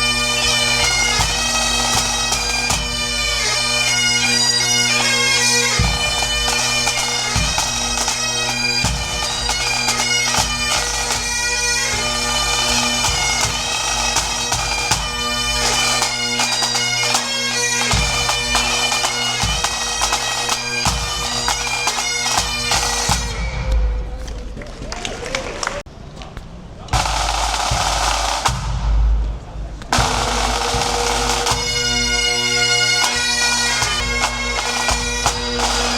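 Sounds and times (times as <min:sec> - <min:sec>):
low drum beat: 0:05.7 - 0:17.2, 0:17.8 - 0:24.6, 0:27.0 - 0:35.9.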